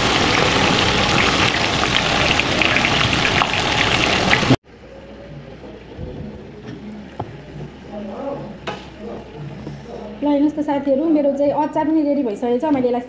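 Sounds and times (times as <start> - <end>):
chicken frying in hot oil: 0.0 - 4.6.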